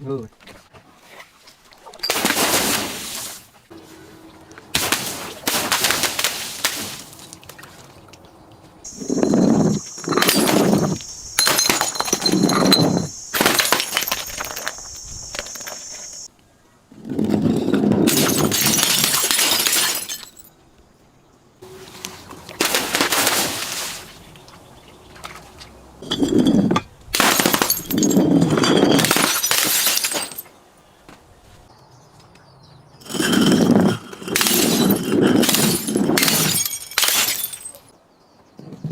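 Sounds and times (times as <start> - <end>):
glass crushing and shattering: 2.0 - 2.8, 8.9 - 16.3, 17.5 - 20.5, 26.0 - 30.5, 33.1 - 37.9.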